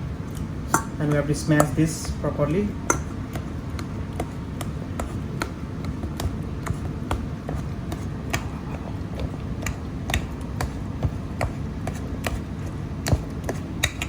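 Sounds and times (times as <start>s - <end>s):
utensil mashing in a bowl: 0.3s - 2.2s, 2.8s - 14.0s
taps against a bowl: 0.7s - 1.8s, 2.9s - 7.6s.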